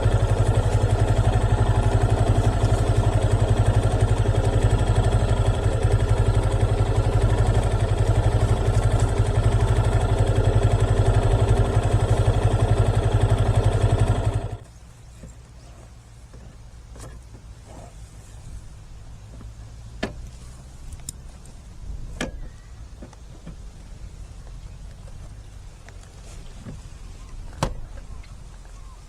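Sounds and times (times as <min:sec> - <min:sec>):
motorcycle engine idling: 0:00.0 - 0:16.1.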